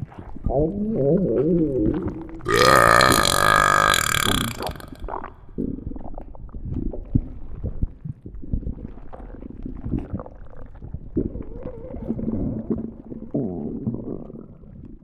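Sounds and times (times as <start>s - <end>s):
stomach growling: 0.5s - 5.3s.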